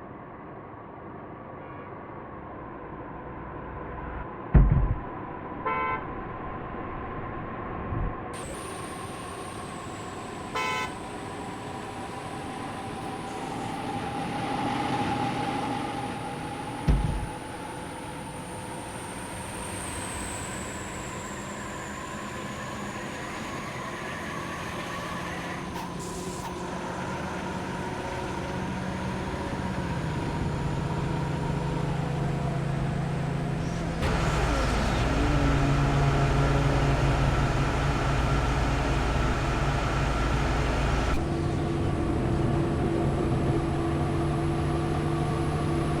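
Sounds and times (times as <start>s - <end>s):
deep loud engine: 3.8s - 5.2s, 6.3s - 46.0s
thump: 4.5s - 5.1s, 16.9s - 17.3s
car horn beep: 5.6s - 6.1s, 10.5s - 11.0s
road traffic passing: 8.4s - 46.0s.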